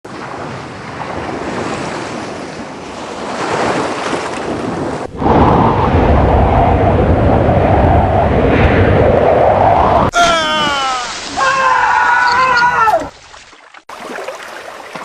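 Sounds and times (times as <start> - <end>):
wind buffeting microphone: 0.1 - 10.2.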